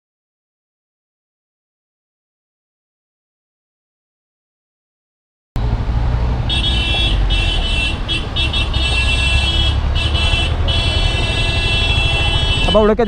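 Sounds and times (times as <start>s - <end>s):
low rumble of traffic: 5.6s - 13.0s
bus horn honking: 5.7s - 13.0s.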